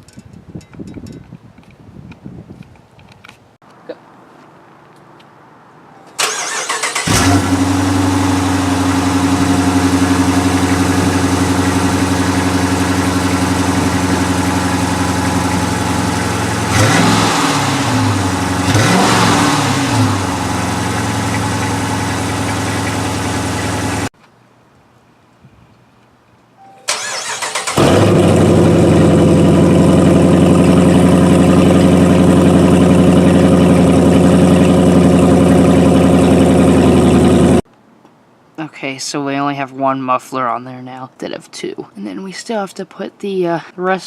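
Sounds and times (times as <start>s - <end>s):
starter cranking engine: 6.2s - 18.0s, 26.9s - 37.6s
car engine idling and revving: 6.2s - 24.1s, 26.9s - 37.6s.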